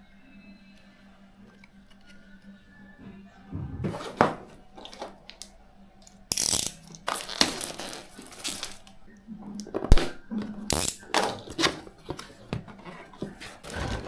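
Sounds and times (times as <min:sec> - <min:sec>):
knocks: 0:03.0 - 0:04.8
packaging rustling and scraping: 0:03.8 - 0:09.0, 0:09.9 - 0:14.0.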